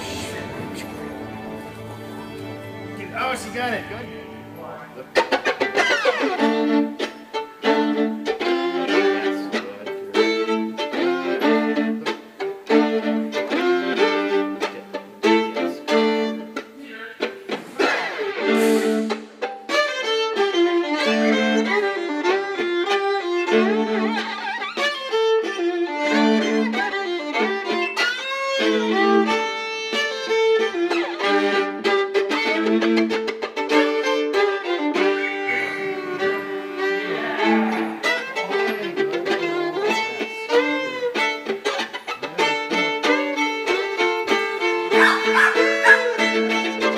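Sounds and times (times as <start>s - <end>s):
fast fiddle tune with strings: 0.0s - 46.9s.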